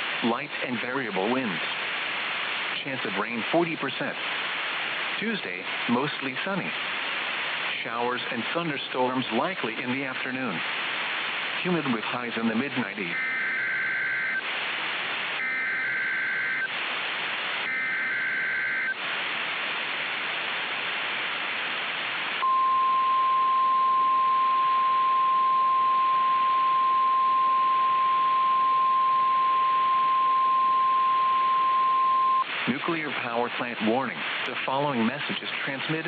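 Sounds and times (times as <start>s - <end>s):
radio static hiss: 0.0s - 36.0s
steady alarm tone: 13.1s - 14.4s, 15.4s - 16.7s, 17.6s - 19.0s.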